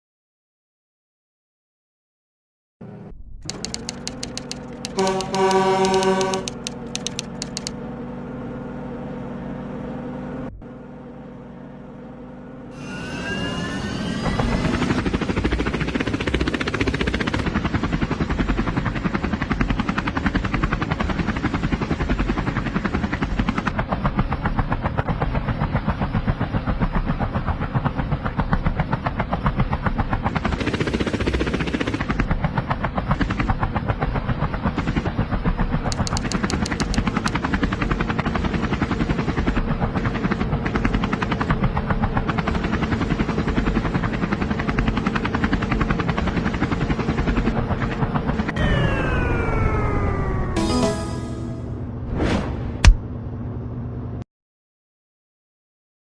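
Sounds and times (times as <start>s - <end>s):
helicopter rotor chopping: 2.8s - 12.0s, 14.1s - 52.0s
horn toots: 4.9s - 6.8s.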